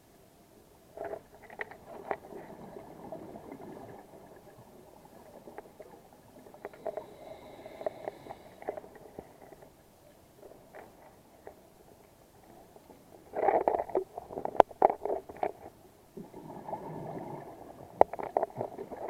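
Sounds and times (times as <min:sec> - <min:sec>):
clicks and crackles: 0:00.9 - 0:02.7, 0:05.2 - 0:07.2, 0:07.8 - 0:15.8, 0:17.9 - 0:19.0
underwater breathing bubbles: 0:06.4 - 0:09.5.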